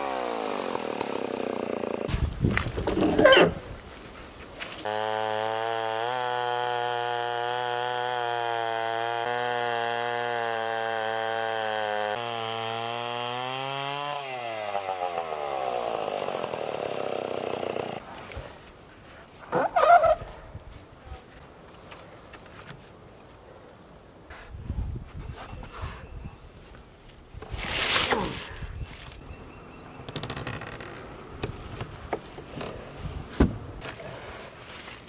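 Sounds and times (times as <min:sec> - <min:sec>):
chainsaw milling a log: 0:00.0 - 0:03.7, 0:04.8 - 0:18.0.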